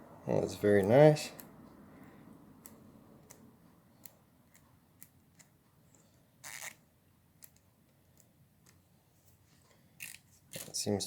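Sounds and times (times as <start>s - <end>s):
ratchet rasp: 6.4s - 6.8s.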